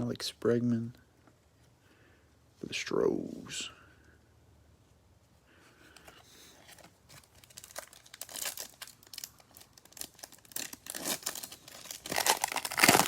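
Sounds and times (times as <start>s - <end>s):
foil wrapper tearing and crinkling: 7.2s - 13.0s.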